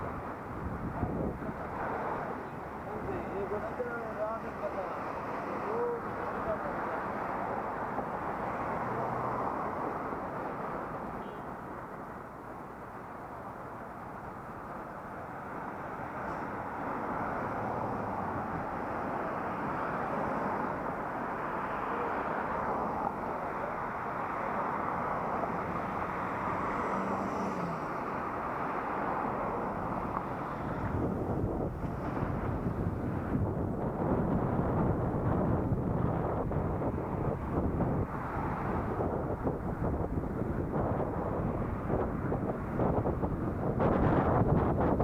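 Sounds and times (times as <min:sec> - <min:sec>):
road noise: 0:00.0 - 0:45.0
wind rushing: 0:29.7 - 0:45.0.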